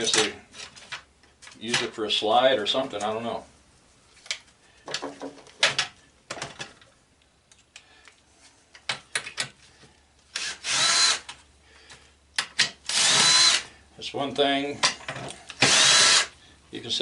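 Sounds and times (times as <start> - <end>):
power drill whine: 10.4 - 11.3, 12.9 - 13.6, 15.6 - 16.3.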